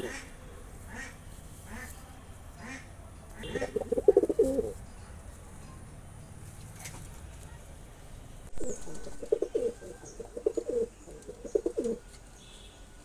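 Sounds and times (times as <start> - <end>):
pigeon cooing: 3.4 - 4.8, 8.6 - 12.1.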